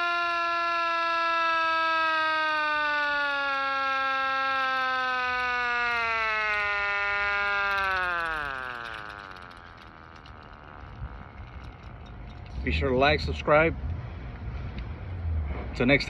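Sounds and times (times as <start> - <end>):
air raid siren wailing: 0.0 - 12.0.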